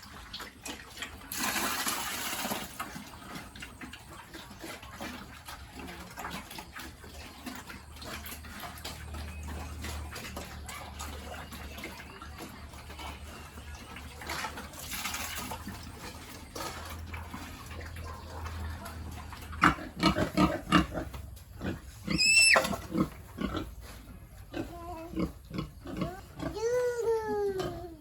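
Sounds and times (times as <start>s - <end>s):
pigs grunting: 2.9s - 14.9s, 15.6s - 28.0s
pig squealing: 21.7s - 23.6s.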